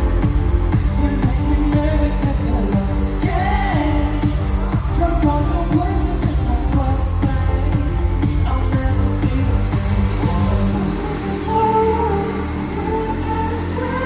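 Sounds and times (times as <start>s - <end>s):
pop song through sound system: 0.0s - 14.0s.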